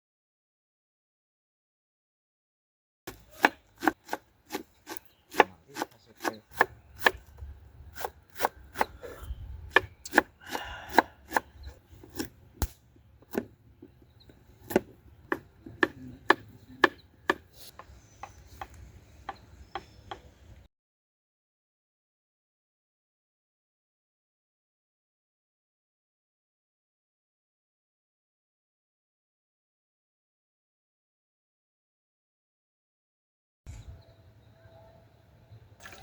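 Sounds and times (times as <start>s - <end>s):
knife chopping on cutting board: 3.1s - 7.2s.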